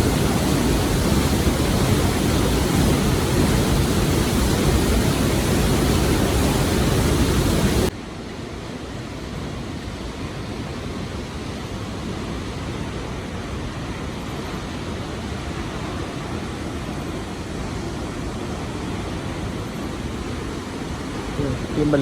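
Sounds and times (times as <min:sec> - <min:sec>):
waterfall roar: 0:00.0 - 0:22.0.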